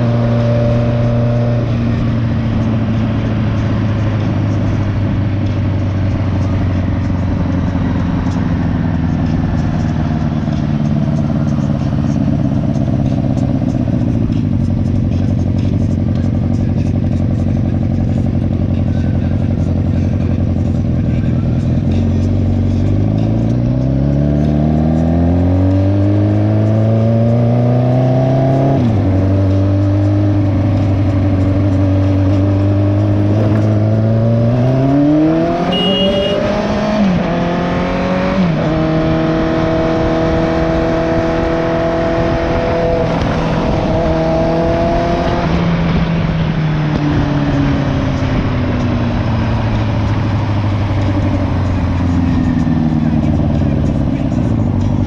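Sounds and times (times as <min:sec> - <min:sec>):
motorcycle engine accelerating: 0:00.0 - 0:55.0.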